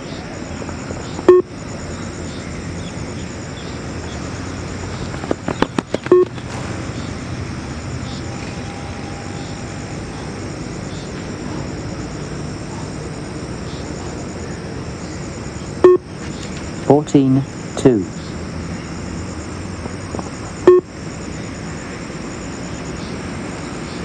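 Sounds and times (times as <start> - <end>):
steady background noise: 0.0 - 24.0
short electronic beep: 1.2 - 1.5, 6.1 - 6.3, 15.8 - 16.1, 20.6 - 20.9
sharp clicks: 5.1 - 6.5.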